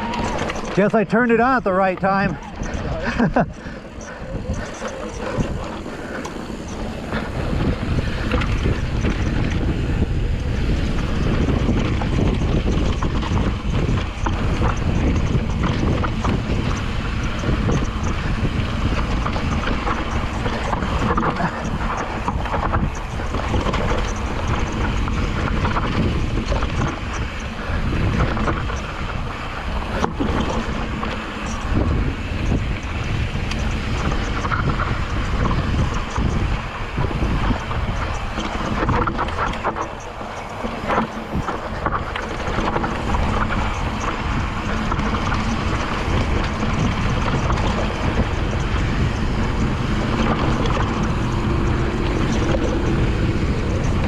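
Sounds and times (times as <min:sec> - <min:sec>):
bike rolling over rocky trail: 0:00.0 - 0:54.0
wind buffeting microphone: 0:00.0 - 0:54.0.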